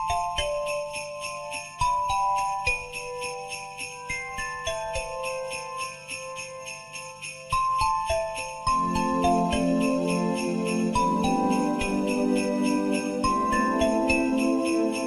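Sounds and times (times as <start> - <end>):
bell-like melody: 0.0 - 15.0
sleigh bells jingling: 0.0 - 15.0
low musical accompaniment: 8.7 - 15.0.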